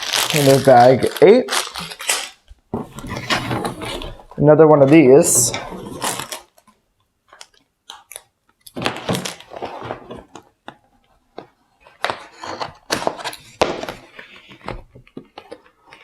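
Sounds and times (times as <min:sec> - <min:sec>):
plastic bags and cardboard crinkling: 0:00.0 - 0:04.3.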